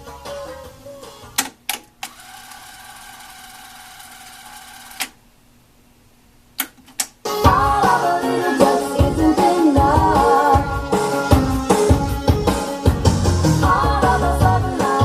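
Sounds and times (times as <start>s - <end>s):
cassette motor whirring: 1.8s - 5.2s.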